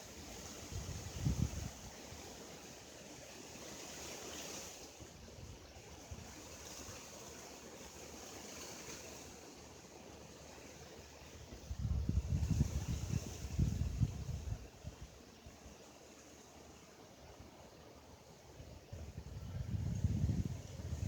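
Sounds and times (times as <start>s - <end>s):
wind buffeting microphone: 0.6s - 2.0s, 11.5s - 15.2s, 18.6s - 21.0s.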